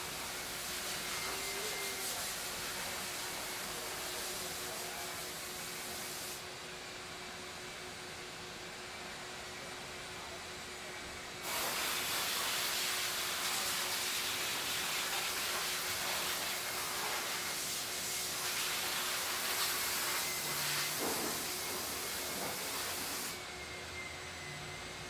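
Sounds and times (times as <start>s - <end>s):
hum of shop machinery: 0.0s - 25.0s
loud spraying hiss: 1.7s - 6.4s, 11.4s - 23.4s.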